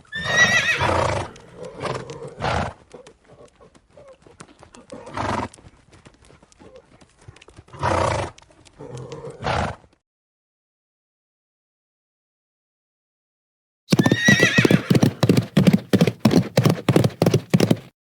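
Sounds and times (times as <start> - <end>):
hooves clip-clopping: 0.1 - 10.0, 13.9 - 17.9
horse snorting: 13.9 - 17.9.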